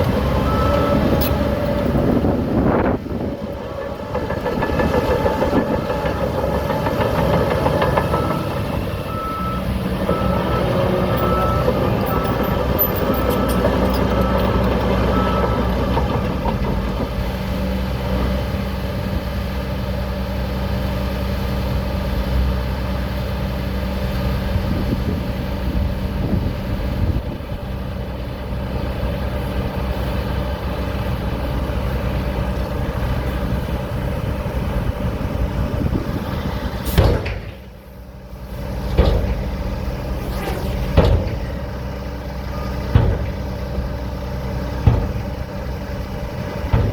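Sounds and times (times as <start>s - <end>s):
diesel engine running: 0.0s - 46.9s
sharp knocks: 42.9s - 43.4s.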